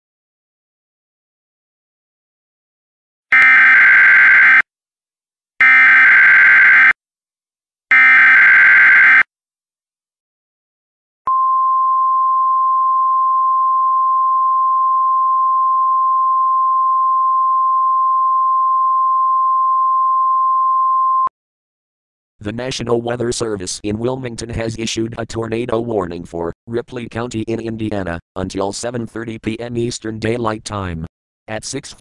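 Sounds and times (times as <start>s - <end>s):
steady attention tone: 3.3s - 4.6s.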